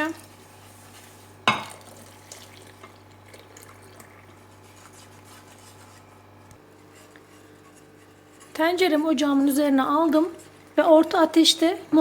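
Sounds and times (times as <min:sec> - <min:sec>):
milk trickling into saucepan: 0:00.9 - 0:05.6.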